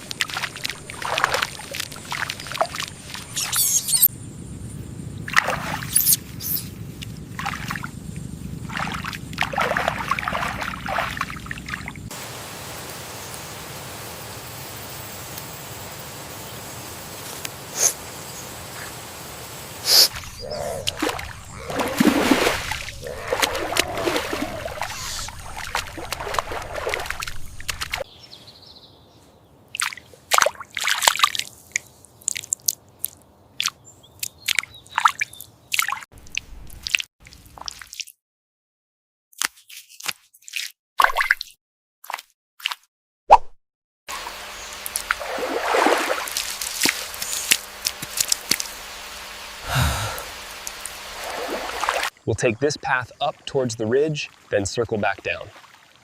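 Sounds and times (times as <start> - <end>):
water sloshing and splashing: 0.0 - 3.5, 5.3 - 5.9, 7.0 - 7.9, 8.6 - 12.2, 20.0 - 28.1, 29.7 - 38.2, 44.8 - 48.7, 50.6 - 52.2, 55.2 - 56.0
water drips and wet splats: 0.0 - 3.7, 7.0 - 7.9, 8.6 - 28.1, 29.7 - 38.2, 44.4 - 49.4, 50.2 - 52.2, 55.4 - 56.0
running water hiss: 5.3 - 28.1, 44.1 - 52.2.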